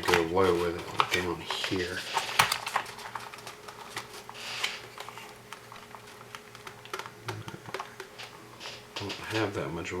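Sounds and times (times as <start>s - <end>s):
hard plastic parts clicking: 0.0s - 4.1s
faint steady hum: 0.0s - 10.0s.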